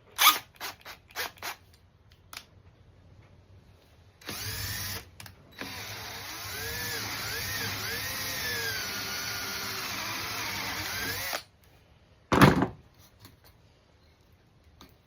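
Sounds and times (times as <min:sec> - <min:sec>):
drill press boring into wood: 0:04.2 - 0:05.0, 0:05.6 - 0:11.4.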